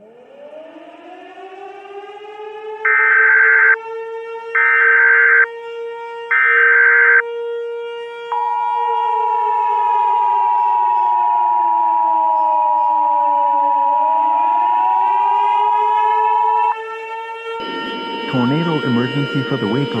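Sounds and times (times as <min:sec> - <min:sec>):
civil defence siren wailing: 0:00.0 - 0:20.0
electronic data bursts: 0:02.9 - 0:03.8, 0:04.6 - 0:05.5, 0:06.3 - 0:07.2
two-tone attention signal: 0:02.9 - 0:03.8, 0:04.6 - 0:05.5, 0:06.3 - 0:07.2, 0:17.6 - 0:20.0.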